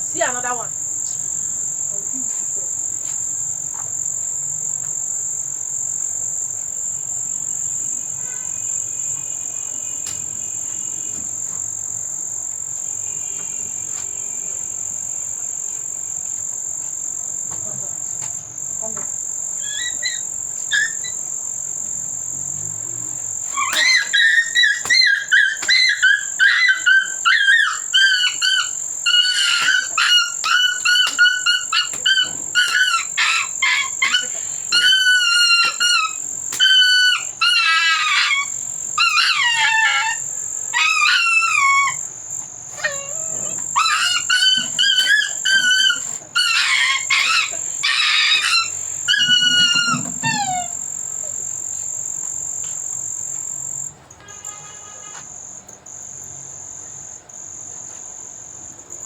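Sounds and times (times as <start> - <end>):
high-pitched insect drone: 0.0 - 55.6
dog barking rapidly: 23.5 - 42.0, 42.8 - 50.8.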